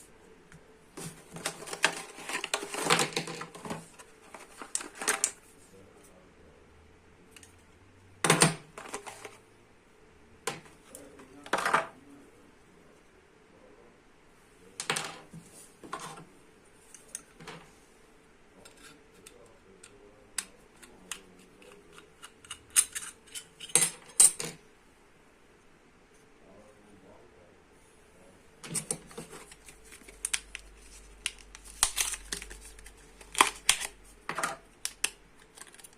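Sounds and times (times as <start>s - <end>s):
packaging rustling: 1.0s - 5.4s, 28.7s - 34.0s, 35.0s - 35.9s.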